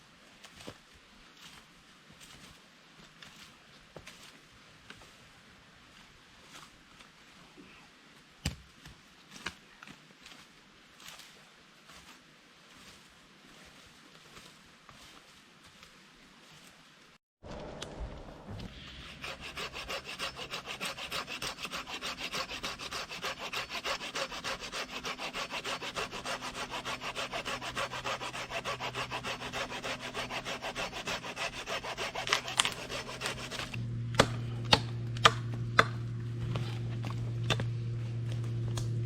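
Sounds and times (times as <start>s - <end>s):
hand saw cutting wood: 18.7s - 39.0s.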